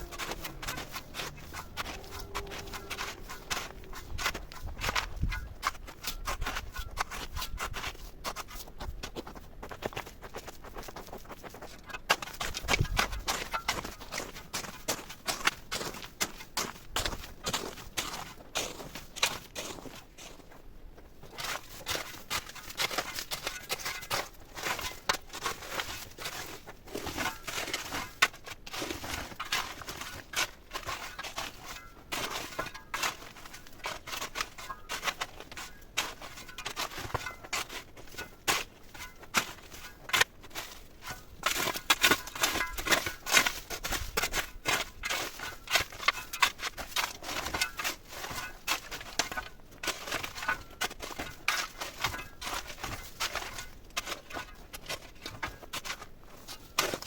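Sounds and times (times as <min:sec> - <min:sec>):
dry twigs and leaves crackling: 0:00.0 - 0:06.3, 0:29.4 - 0:57.0.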